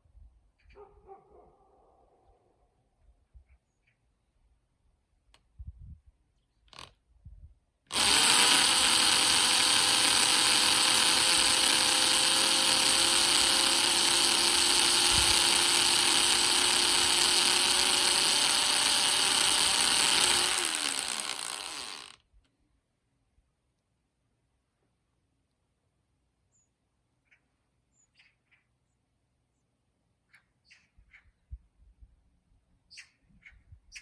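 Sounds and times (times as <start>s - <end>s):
electric power tool running: 7.9s - 22.2s.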